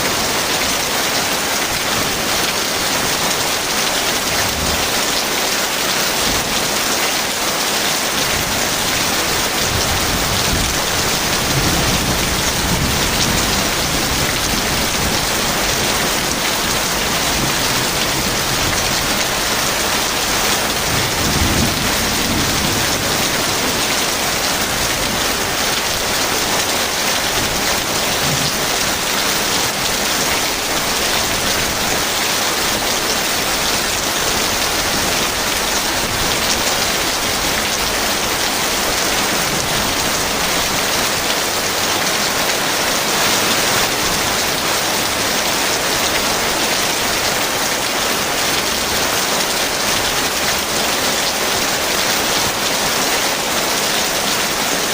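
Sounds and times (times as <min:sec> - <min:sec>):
heavy rain falling: 0:00.0 - 0:54.9
thunder rumbling: 0:09.4 - 0:30.4.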